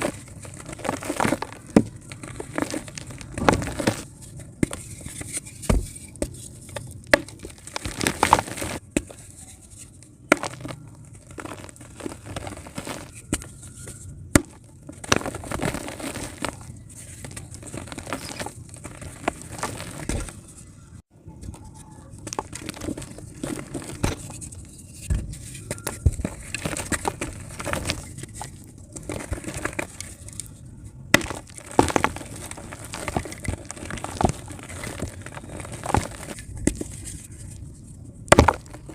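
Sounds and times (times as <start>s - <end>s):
clay crumbling and crunching: 0.0s - 38.9s.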